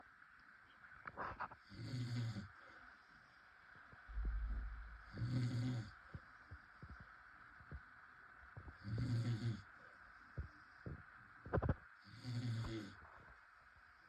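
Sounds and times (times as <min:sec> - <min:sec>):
faint background hiss: 0:00.0 - 0:14.0
low rumble: 0:04.1 - 0:05.4
person snoring: 0:05.1 - 0:05.9, 0:08.8 - 0:09.6, 0:12.0 - 0:13.0.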